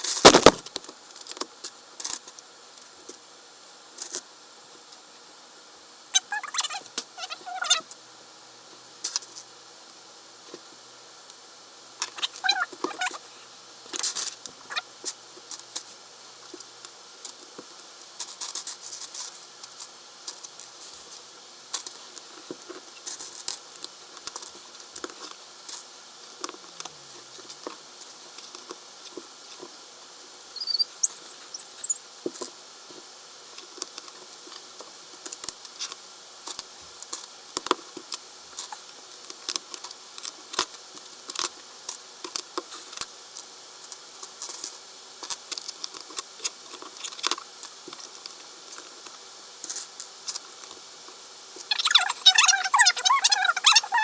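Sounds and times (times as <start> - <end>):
brief high squeak: 30.6 - 32.0.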